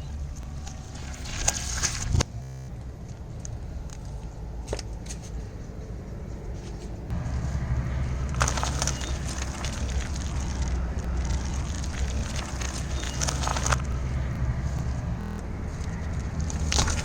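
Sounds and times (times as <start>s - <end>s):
car rumbling: 0.0s - 17.0s
tyre crushing brittle object: 8.1s - 14.1s, 16.3s - 17.0s.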